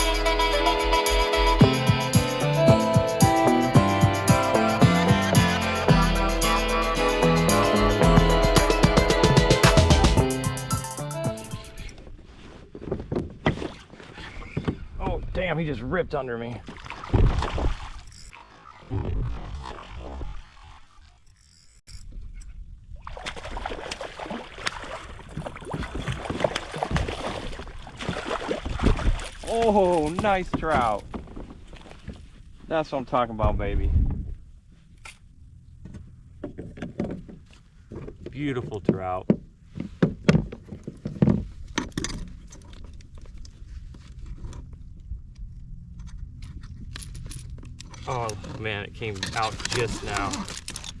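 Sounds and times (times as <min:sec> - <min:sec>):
water splashing and sloshing: 0:11.9 - 0:15.0, 0:16.4 - 0:21.8, 0:22.9 - 0:32.6
knocks and rattles in kayak: 0:24.7 - 0:32.4, 0:35.8 - 0:43.4
low steady rumble: 0:41.5 - 0:51.0.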